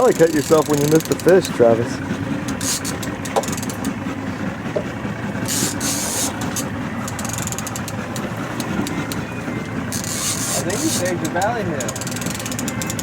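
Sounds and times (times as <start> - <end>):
boat engine running: 0.0 - 13.0
faint clicks: 9.9 - 13.0.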